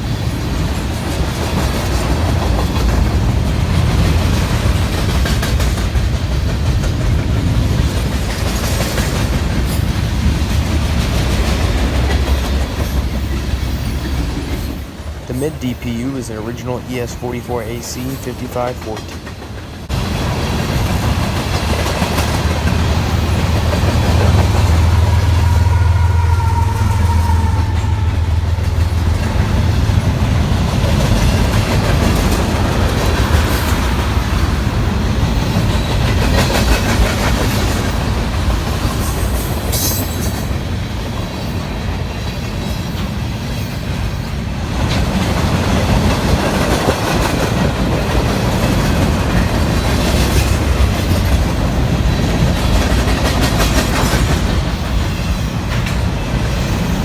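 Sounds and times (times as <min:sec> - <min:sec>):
diesel locomotive droning: 0:09.4 - 0:36.1.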